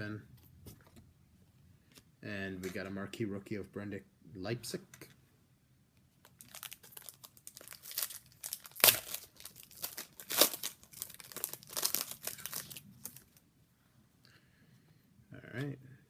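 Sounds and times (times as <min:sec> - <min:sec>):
card pack wrapper tearing and crinkling: 0:06.2 - 0:13.4.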